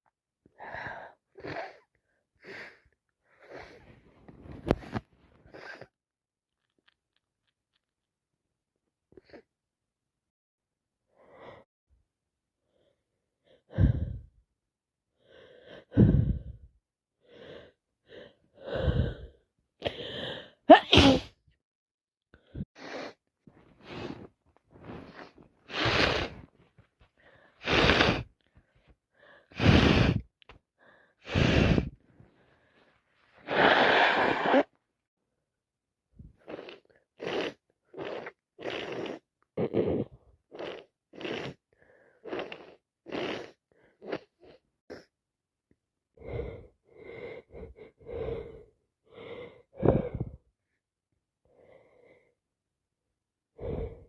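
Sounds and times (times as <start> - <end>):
woman sneezing: 20.7 - 21.4.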